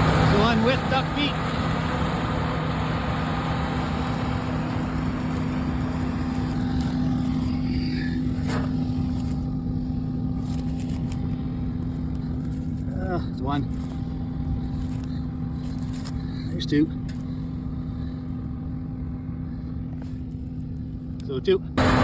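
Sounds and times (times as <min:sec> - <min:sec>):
engine running steadily: 0:00.0 - 0:22.0.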